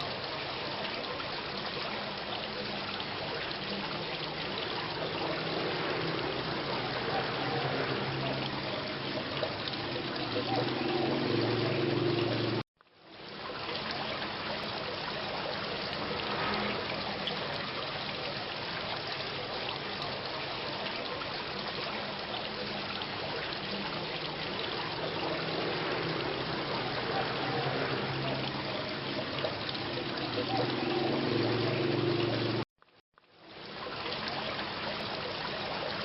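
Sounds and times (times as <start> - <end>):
steady rain: 0.0 - 36.0
water trickling: 0.0 - 36.0.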